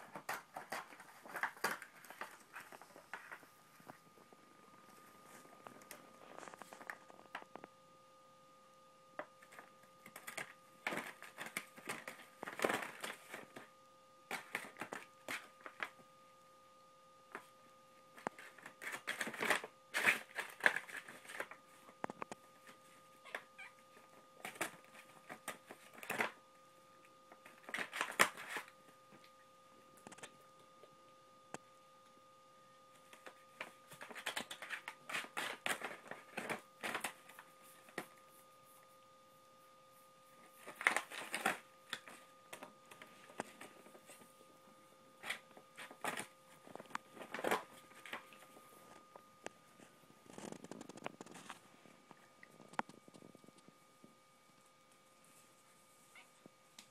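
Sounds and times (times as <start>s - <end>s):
paper bag crinkling and tearing: 18.3s - 21.6s, 40.6s - 42.2s.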